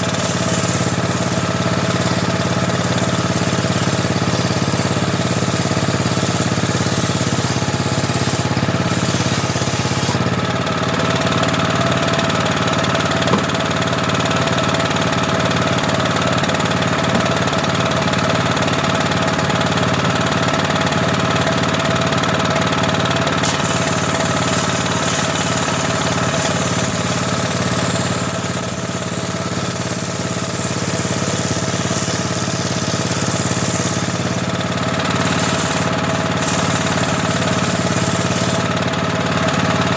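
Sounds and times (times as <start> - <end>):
saw blade ripping wood: 0.0 - 10.4, 22.6 - 39.3
table saw running: 0.0 - 39.9.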